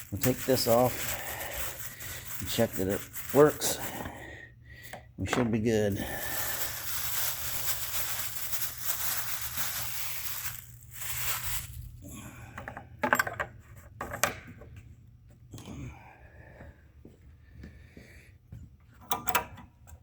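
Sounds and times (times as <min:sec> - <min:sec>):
rustling and scraping: 0:00.0 - 0:04.1, 0:05.9 - 0:11.9.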